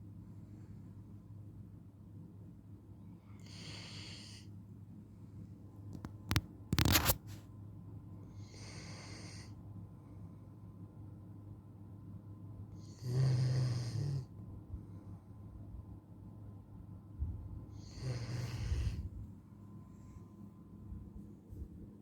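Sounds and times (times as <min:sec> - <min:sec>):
dog snoring: 0:03.4 - 0:04.4, 0:08.4 - 0:09.5, 0:12.8 - 0:14.3, 0:17.7 - 0:19.1.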